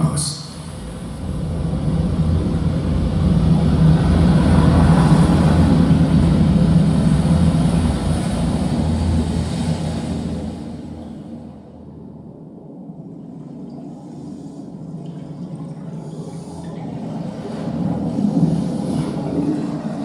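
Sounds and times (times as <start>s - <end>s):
deep rumbling sound effect: 0.0s - 13.7s.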